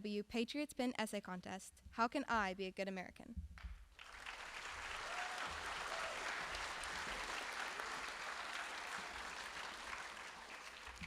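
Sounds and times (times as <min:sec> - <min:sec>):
audience applauding: 0:04.0 - 0:11.0.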